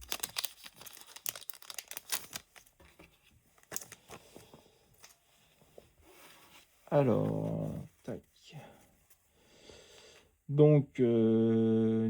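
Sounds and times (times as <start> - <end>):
foil wrapper crinkling: 0.0 - 5.2.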